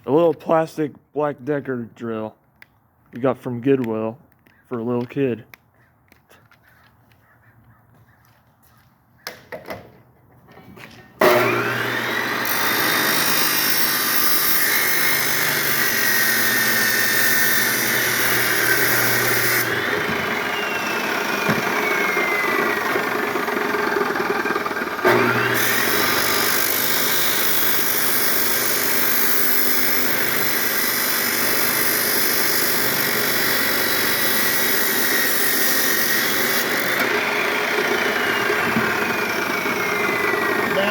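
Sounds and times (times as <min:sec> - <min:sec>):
chop saw motor running: 0:11.2 - 0:40.9
saw cutting plastic: 0:11.2 - 0:40.9.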